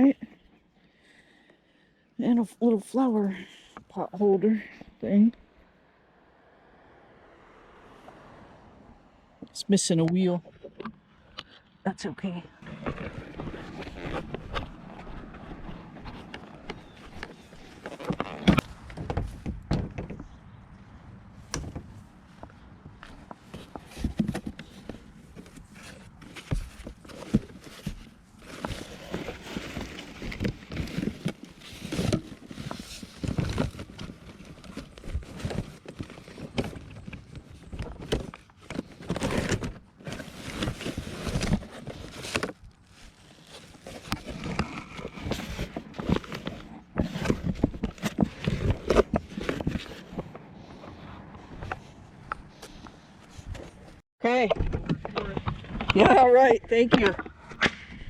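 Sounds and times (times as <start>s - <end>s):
knocks and rustles of handling: 12.6s - 20.6s, 21.4s - 58.0s.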